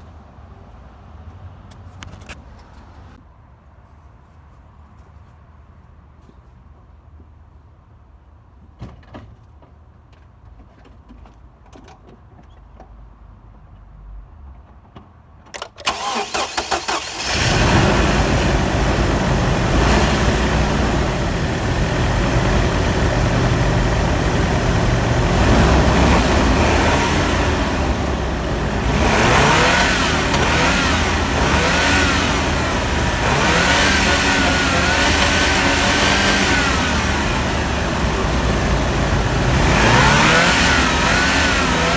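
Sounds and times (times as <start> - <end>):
engine starter cranking: 15.6 - 18.8, 28.9 - 37.1
engine running steadily: 15.9 - 41.9.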